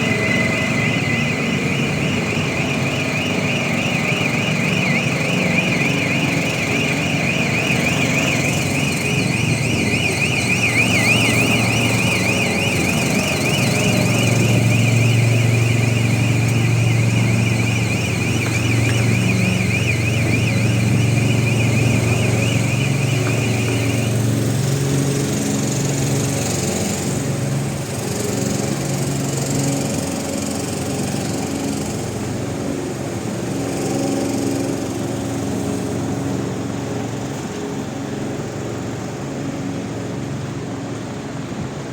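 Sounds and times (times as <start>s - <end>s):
car alarm warbling: 0.0s - 25.8s
generators droning: 0.0s - 41.9s.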